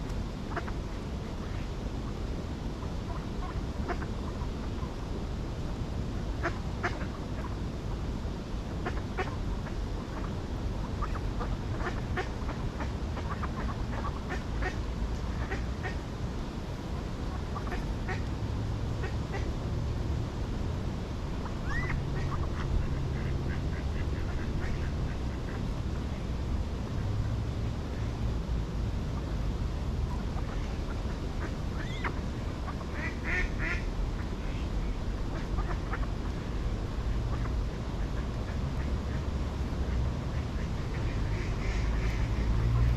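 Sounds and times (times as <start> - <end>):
low steady rumble: 0.0 - 42.9
ducks quacking: 39.9 - 42.9.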